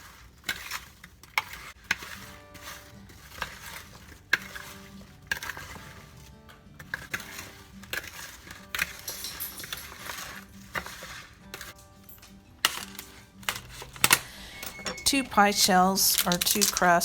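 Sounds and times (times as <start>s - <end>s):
apple slices crunching: 0.0s - 9.0s, 10.1s - 11.8s, 15.2s - 17.0s
quiet background music: 0.0s - 17.0s
spoon scraping a bowl: 0.0s - 17.0s.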